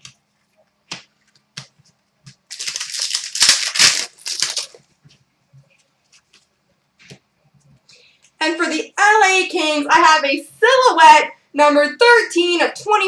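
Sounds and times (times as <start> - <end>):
card packaging crinkling: 2.3 - 4.9.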